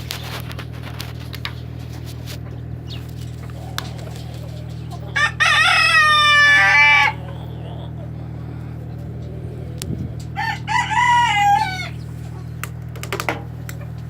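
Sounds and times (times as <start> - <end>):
steady low hum: 0.0 - 14.0
rooster crowing: 3.5 - 12.6.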